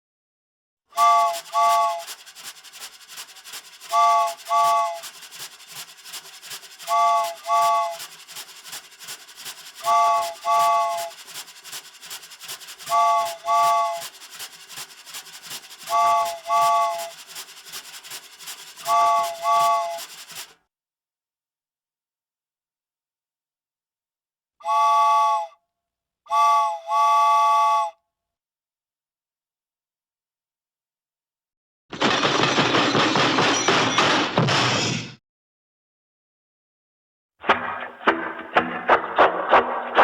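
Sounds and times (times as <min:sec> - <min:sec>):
train whistle tooting: 0:01.0 - 0:02.5, 0:03.8 - 0:08.2, 0:09.7 - 0:11.4, 0:12.8 - 0:14.4, 0:15.6 - 0:17.2, 0:18.8 - 0:20.5, 0:24.6 - 0:25.6, 0:26.3 - 0:28.0
cartoon steam train chugging: 0:01.0 - 0:20.6, 0:37.5 - 0:40.0.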